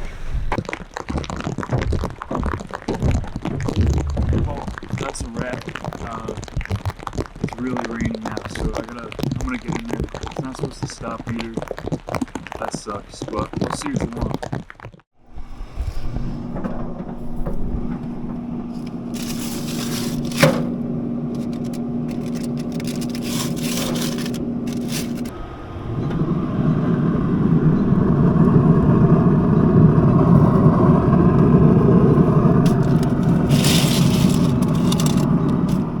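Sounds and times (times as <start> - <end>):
sharp clicks and crackles: 0.5 - 15.1, 18.8 - 25.3, 32.6 - 36.0
vehicle engine running: 16.5 - 36.0.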